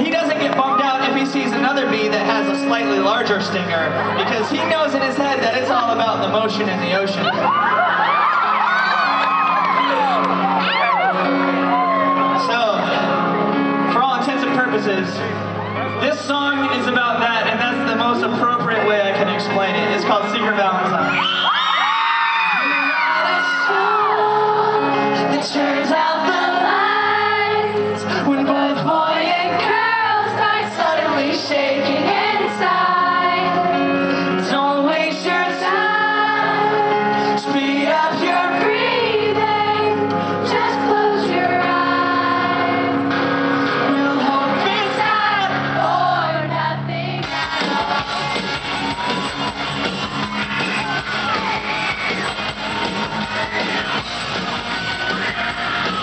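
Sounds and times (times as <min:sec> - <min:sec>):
live rock band playing: 0:00.0 - 0:56.0
rock guitars: 0:00.0 - 0:56.0
person singing: 0:22.7 - 0:48.4.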